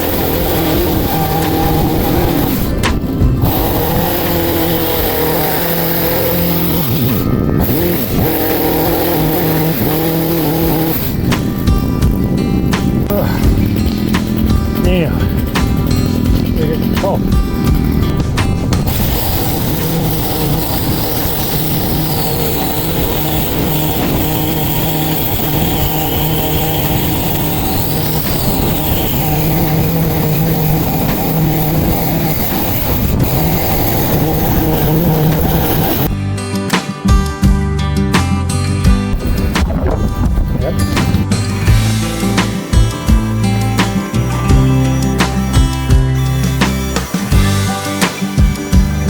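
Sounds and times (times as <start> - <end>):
lawn mower engine running: 0.0 - 49.0.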